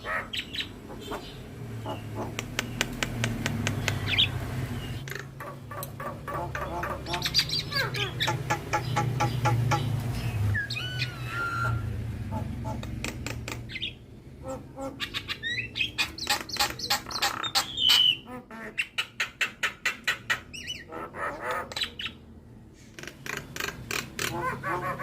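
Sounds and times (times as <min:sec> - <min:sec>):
bird chirps and squawks: 0:00.0 - 0:02.8, 0:03.9 - 0:25.0.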